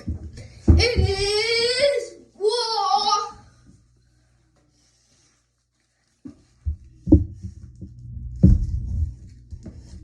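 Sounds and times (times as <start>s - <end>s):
heavy dull thumps: 0.0s - 1.5s, 6.6s - 9.8s.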